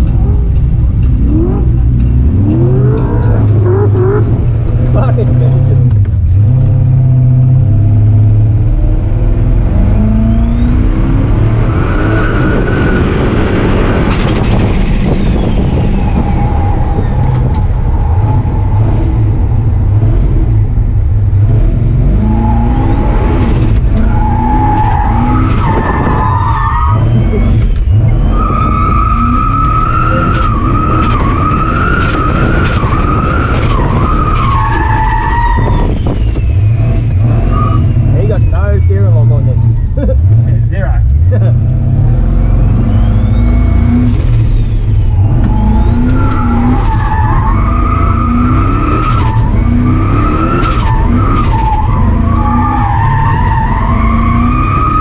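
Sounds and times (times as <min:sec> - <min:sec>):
truck engine revving hard: 0:01.1 - 0:55.0
tyres squealing: 0:43.0 - 0:55.0.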